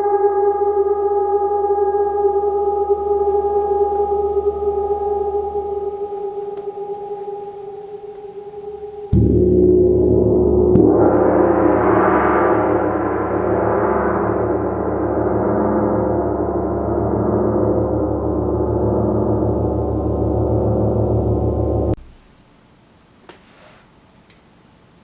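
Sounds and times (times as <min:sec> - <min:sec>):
gong ringing: 0:00.0 - 0:11.2
steady low hum: 0:00.0 - 0:11.8, 0:12.8 - 0:23.3.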